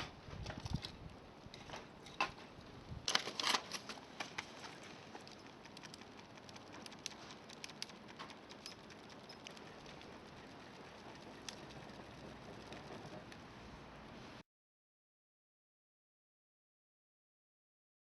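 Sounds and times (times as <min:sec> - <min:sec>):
campfire crackling: 0:04.0 - 0:13.5.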